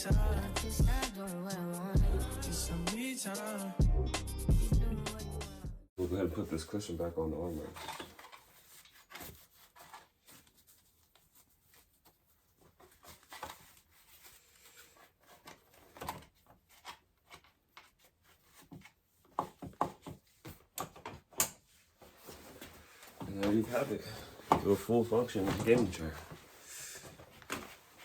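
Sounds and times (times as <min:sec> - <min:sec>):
soft rubbing: 0:06.0 - 0:16.0, 0:21.6 - 0:28.0.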